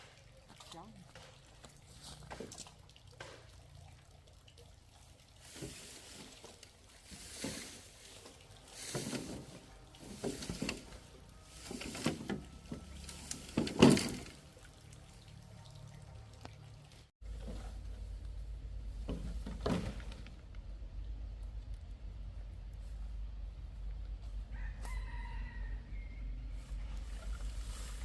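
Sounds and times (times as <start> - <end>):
liquid pouring in bursts: 1.4 - 17.1.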